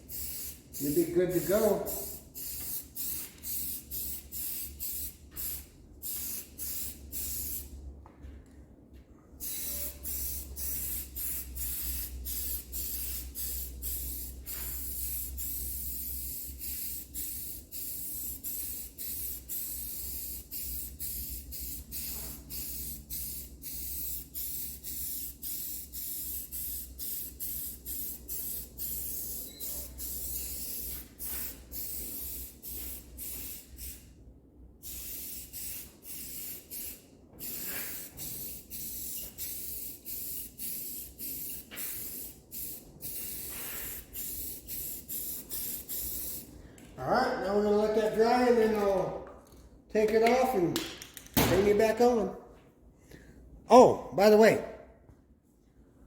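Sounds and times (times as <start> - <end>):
spray paint hissing in bursts: 0.0 - 7.8, 9.4 - 34.2, 34.8 - 46.6.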